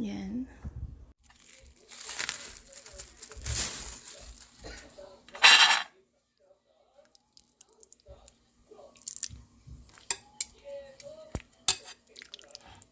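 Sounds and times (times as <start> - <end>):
plastic rustling: 1.2 - 5.8
bowl clattering: 5.3 - 5.9.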